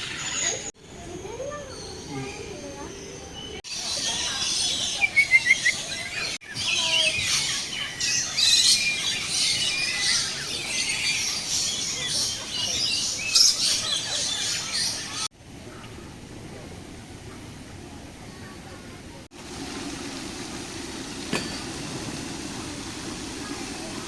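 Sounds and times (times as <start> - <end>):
birds chirping in chorus: 1.3 - 15.3.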